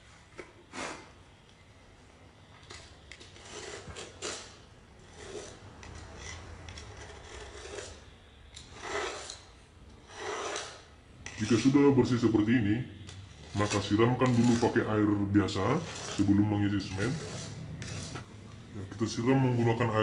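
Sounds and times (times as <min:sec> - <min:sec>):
grout being scraped from tile joints: 0:02.6 - 0:12.1, 0:13.1 - 0:18.3.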